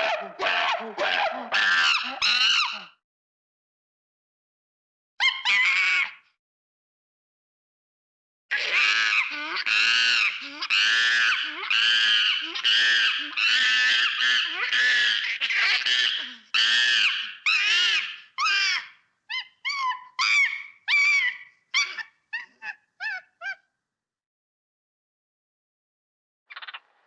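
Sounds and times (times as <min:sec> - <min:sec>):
monkey shrill calls: 0:00.0 - 0:02.9, 0:05.2 - 0:06.2, 0:08.5 - 0:23.6.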